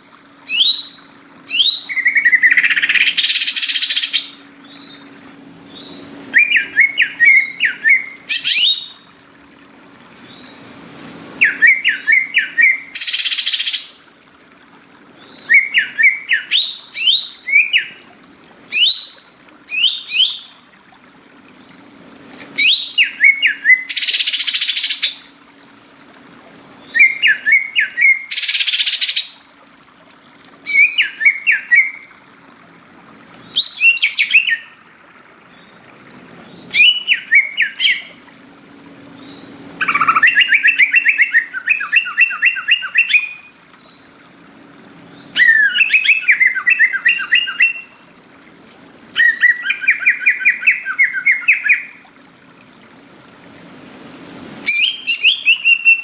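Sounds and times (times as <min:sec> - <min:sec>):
bird whistling song: 0:00.4 - 0:09.1, 0:11.4 - 0:14.0, 0:15.2 - 0:18.1, 0:18.7 - 0:20.6, 0:22.6 - 0:25.3, 0:26.8 - 0:29.5, 0:30.6 - 0:32.1, 0:33.4 - 0:34.8, 0:36.4 - 0:38.2, 0:39.2 - 0:44.0, 0:45.2 - 0:48.0, 0:49.2 - 0:52.0, 0:54.6 - 0:56.0.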